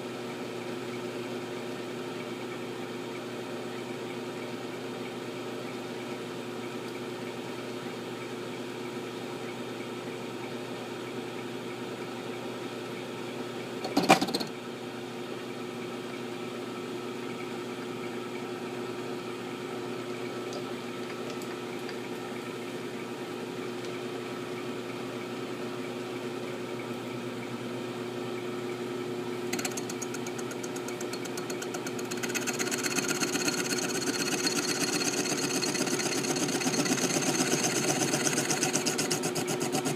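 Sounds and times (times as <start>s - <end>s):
milling machine running: 29.4s - 39.9s
pulsing cutting sound: 32.2s - 39.9s.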